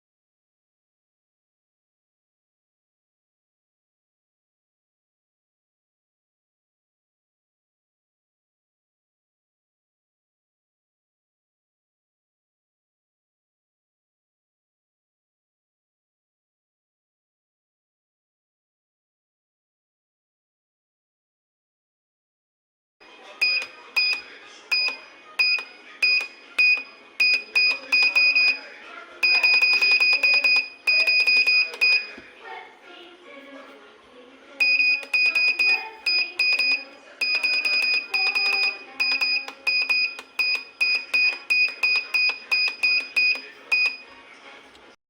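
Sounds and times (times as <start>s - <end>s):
buzzer beeping high pitch: 23.4s - 28.6s, 29.2s - 32.2s, 34.6s - 44.1s.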